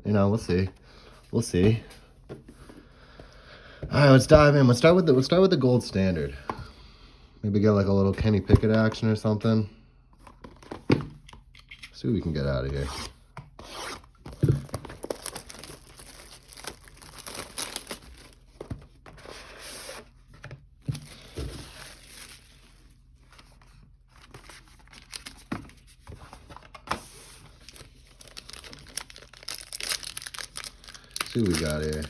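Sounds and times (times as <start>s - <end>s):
packaging tearing and crinkling: 14.4s - 18.4s, 27.6s - 32.0s.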